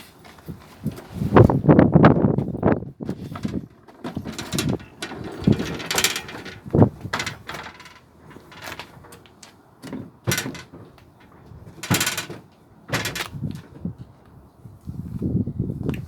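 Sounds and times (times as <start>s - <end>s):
knocks and clatters: 3.1s - 13.8s.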